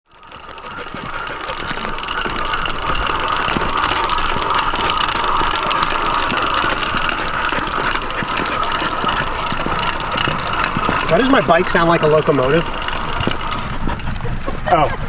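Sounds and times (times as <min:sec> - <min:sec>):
two-stroke engine running: 0:00.0 - 0:15.0.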